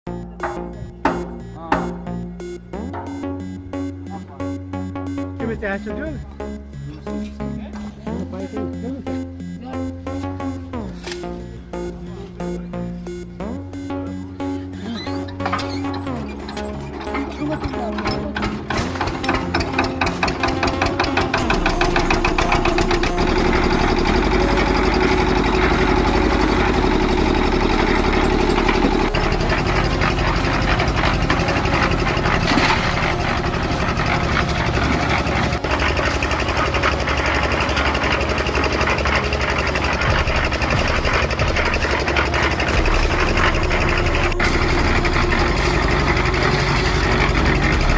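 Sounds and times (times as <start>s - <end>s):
concrete mixer motor running: 2.2s - 47.9s
mixer drum knocking rattle: 16.3s - 47.9s.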